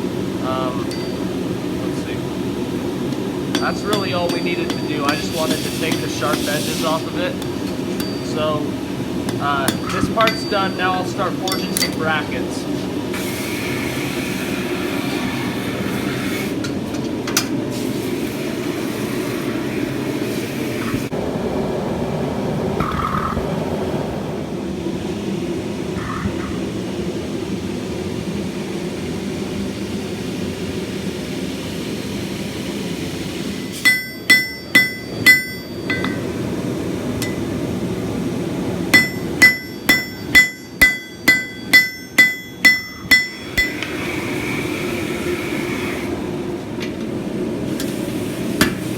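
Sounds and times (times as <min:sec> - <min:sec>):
hammer ringing on an anvil: 0:00.8 - 0:01.4, 0:03.5 - 0:06.5, 0:07.4 - 0:08.7, 0:09.3 - 0:12.3, 0:33.8 - 0:36.4, 0:37.2 - 0:37.5, 0:38.9 - 0:44.0.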